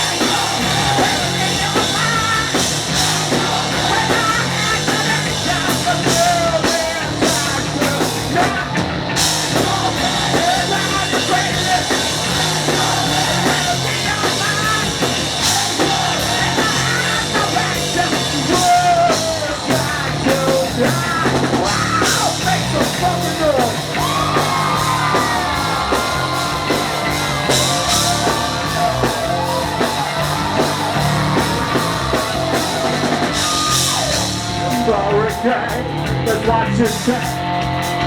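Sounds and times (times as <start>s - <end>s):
shouted vocals: 0.0s - 8.7s, 9.3s - 35.9s
pounding drums: 0.0s - 36.3s
distorted electric guitars: 0.0s - 38.0s
rock band playing live: 0.0s - 38.0s.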